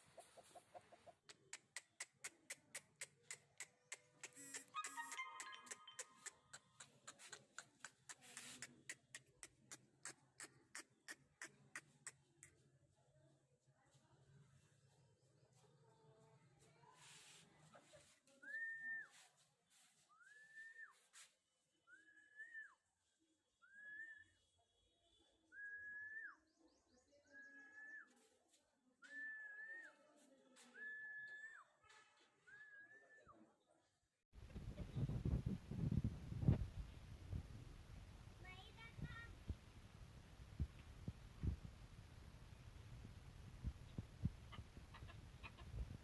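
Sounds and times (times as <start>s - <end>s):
faint whistled notes: 20.1s - 21.1s, 21.8s - 22.9s, 23.6s - 28.2s, 29.0s - 33.5s.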